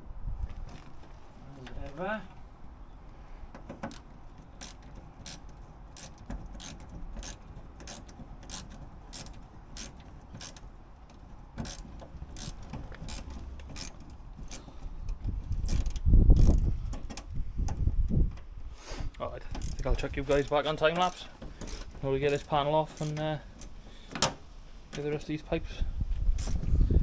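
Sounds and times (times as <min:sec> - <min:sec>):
low clatter and rumble: 0:03.4 - 0:27.0
ratchet wrench clicking: 0:03.8 - 0:17.2, 0:19.4 - 0:25.4.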